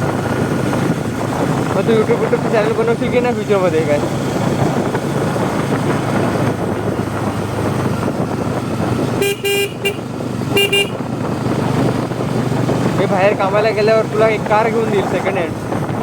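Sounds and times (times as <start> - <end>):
motorcycle engine running: 0.0 - 16.0
road and wind noise: 0.0 - 16.0
horn tooting: 9.1 - 11.1.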